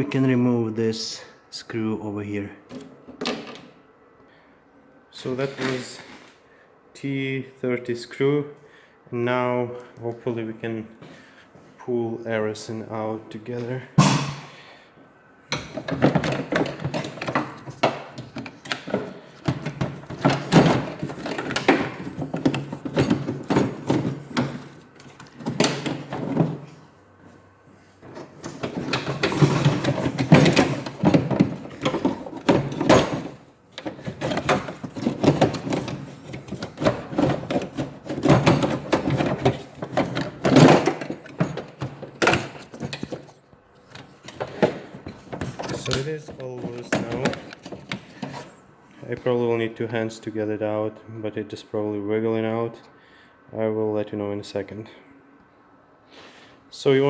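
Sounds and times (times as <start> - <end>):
door handle parts rattling: 15.5 - 26.8, 28.0 - 48.5.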